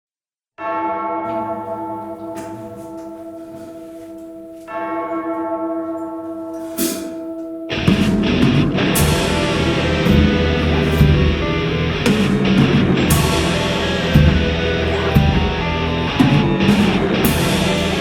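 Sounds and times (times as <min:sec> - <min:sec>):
bell tolling: 0:00.6 - 0:18.0
heavy rock music with guitar: 0:07.7 - 0:18.0.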